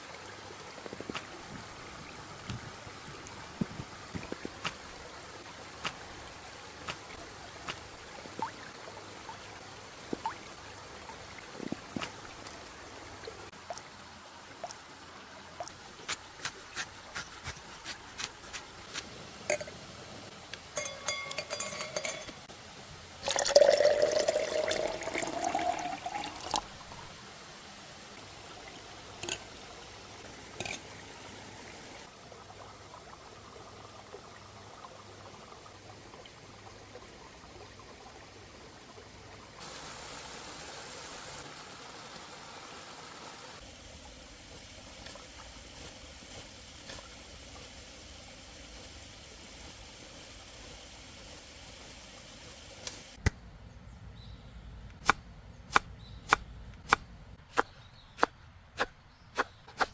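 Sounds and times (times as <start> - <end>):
ringing clink: 20.8 - 22.4
liquid pouring into container: 23.2 - 26.8.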